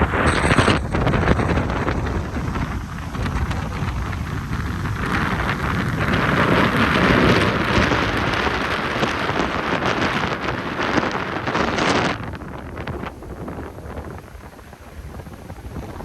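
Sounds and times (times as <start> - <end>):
heavy surf breaking: 0.0 - 16.0
wind buffeting microphone: 0.0 - 16.0.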